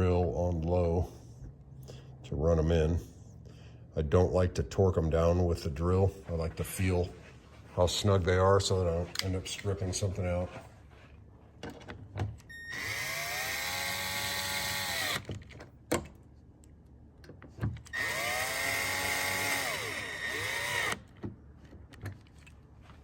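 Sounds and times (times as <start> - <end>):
cordless drill motor whine: 12.5 - 15.3, 17.9 - 21.1.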